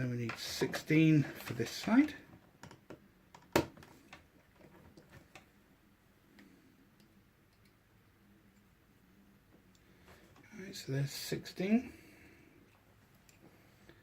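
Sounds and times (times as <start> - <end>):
plastic pieces clicking and tapping: 2.6 - 4.3.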